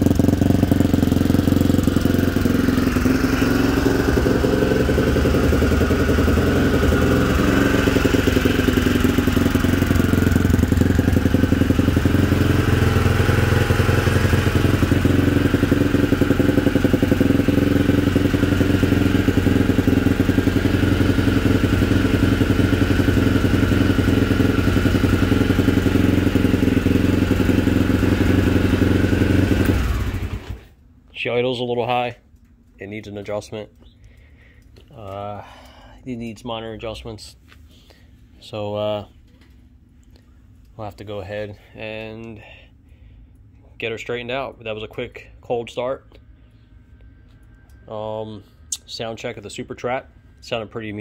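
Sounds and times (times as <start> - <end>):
motorcycle engine idling: 0.0 - 30.7.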